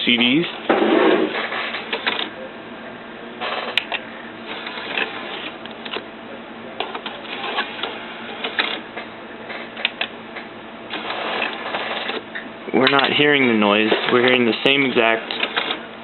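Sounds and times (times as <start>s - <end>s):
mechanism clicks: 6.8s - 14.4s, 15.2s - 15.8s.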